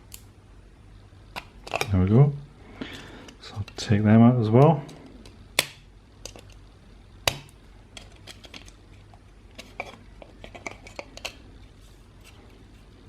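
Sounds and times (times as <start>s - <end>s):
plastic parts clicking and tapping: 4.9s - 6.6s, 7.3s - 8.8s.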